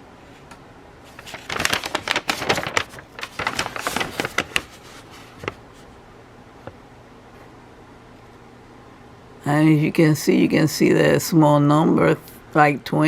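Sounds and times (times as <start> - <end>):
paper crinkling and rustling: 1.0 - 5.9.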